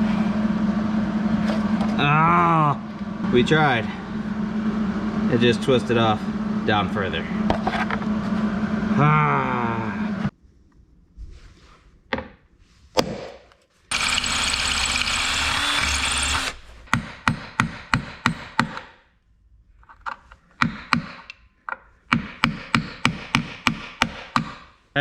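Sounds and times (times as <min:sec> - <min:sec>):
power drill running: 0:13.9 - 0:16.7
hammer striking chisel: 0:15.6 - 0:19.0, 0:20.6 - 0:21.3, 0:22.1 - 0:24.7.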